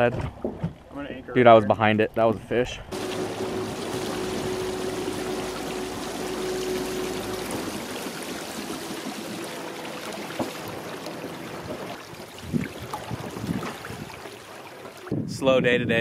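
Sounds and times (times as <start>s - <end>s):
faint steady hum: 2.9s - 12.3s
river water rushing: 2.9s - 15.1s.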